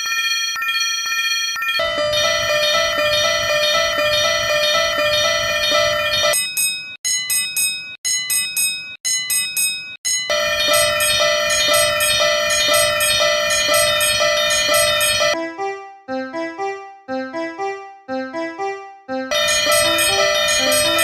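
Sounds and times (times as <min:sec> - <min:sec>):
level-crossing warning bells: 0:00.0 - 0:15.4, 0:19.3 - 0:21.0
short keyboard melody: 0:01.8 - 0:06.4, 0:10.3 - 0:21.0.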